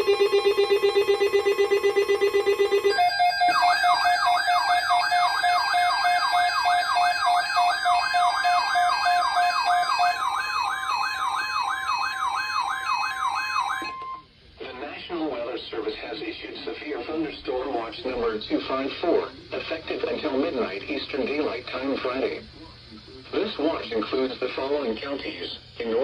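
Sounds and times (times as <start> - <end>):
pulsed buzzing tone: 0.0 - 5.0
warbling emergency alert tone: 0.0 - 14.2.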